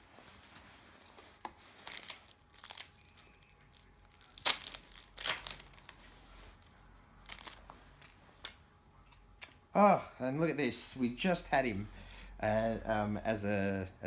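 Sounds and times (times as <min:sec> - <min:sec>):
wrapper crinkling and tearing: 0:00.0 - 0:08.6.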